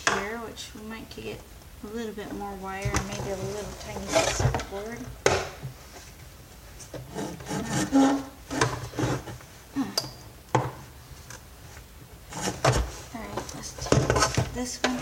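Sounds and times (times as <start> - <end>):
plastic parts scraping and knocking: 2.8 - 6.1, 6.8 - 9.5, 12.3 - 15.0.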